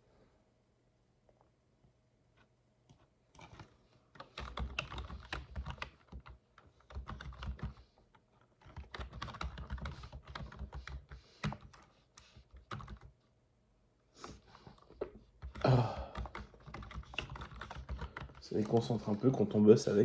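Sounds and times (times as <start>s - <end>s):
typing on a computer keyboard: 3.4s - 13.2s, 14.7s - 19.2s.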